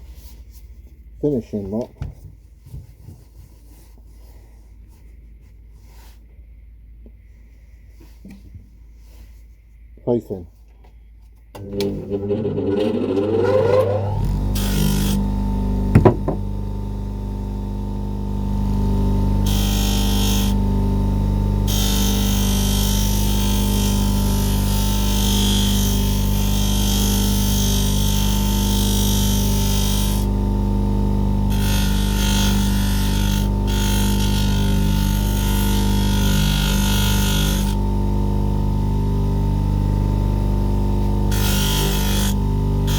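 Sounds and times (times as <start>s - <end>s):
buffer motor humming: 11.6s - 42.9s
sharp knocks: 16.0s - 16.5s.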